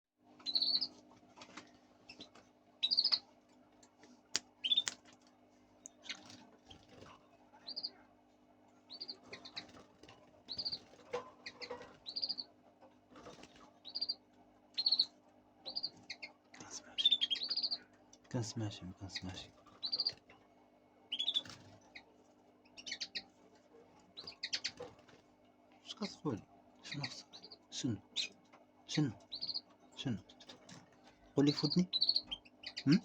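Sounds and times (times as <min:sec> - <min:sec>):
low steady hum: 0:00.2 - 0:33.0
lovebirds chirping: 0:00.4 - 0:01.0, 0:02.0 - 0:03.3, 0:04.6 - 0:05.0, 0:05.9 - 0:08.0, 0:08.8 - 0:12.6, 0:13.2 - 0:20.3, 0:21.1 - 0:23.4, 0:24.0 - 0:25.2, 0:25.8 - 0:33.0.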